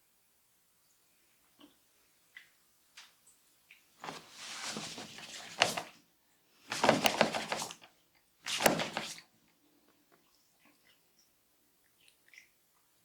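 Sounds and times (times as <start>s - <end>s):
hands rubbing hair and skin: 4.0s - 5.9s, 6.7s - 7.8s, 8.5s - 9.2s.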